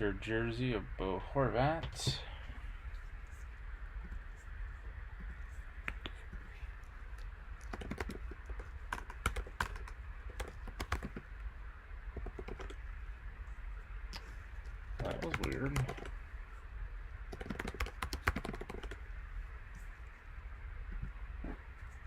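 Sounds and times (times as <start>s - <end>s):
low steady hum: 0.0s - 22.0s
keyboard typing: 7.6s - 11.2s, 12.2s - 12.8s, 15.0s - 16.1s, 17.3s - 19.0s.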